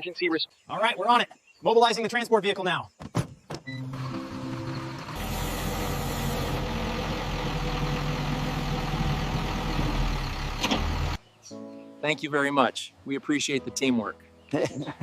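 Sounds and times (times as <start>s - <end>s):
truck engine rumbling: 3.7s - 11.2s.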